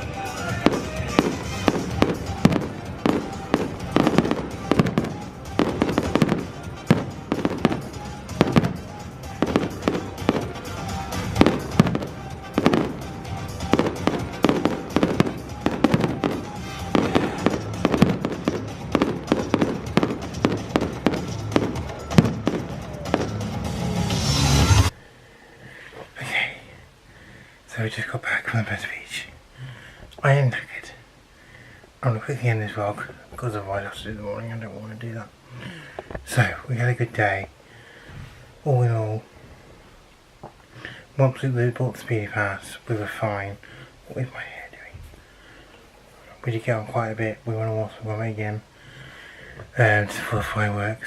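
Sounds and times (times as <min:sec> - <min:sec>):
fireworks bangs and crackles: 0:00.0 - 0:24.9
music playing: 0:00.0 - 0:25.0.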